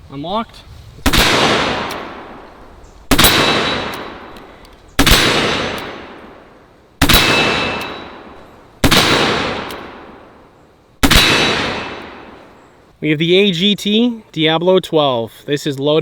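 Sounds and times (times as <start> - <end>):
revolver shots with echo: 1.1 - 2.4, 3.1 - 4.4, 5.0 - 10.4, 11.0 - 12.4.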